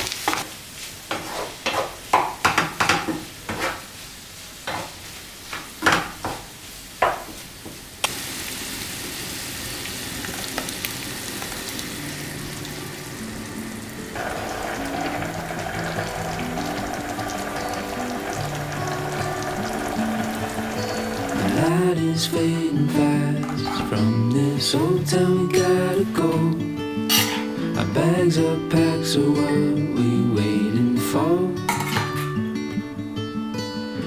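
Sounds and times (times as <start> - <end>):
steady hiss: 6.4 - 26.6
scraping or brushing strokes: 23.4 - 24.0.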